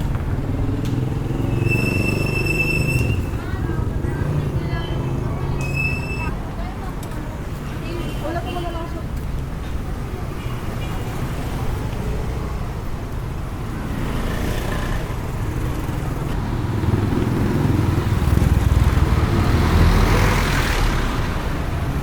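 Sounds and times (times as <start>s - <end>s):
traffic engine and road rumble: 0.0s - 22.0s
vehicle passing close: 13.7s - 22.0s.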